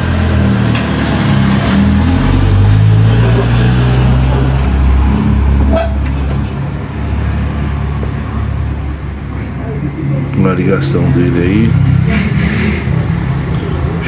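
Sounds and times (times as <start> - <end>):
vehicle engine drone: 0.0 - 14.0.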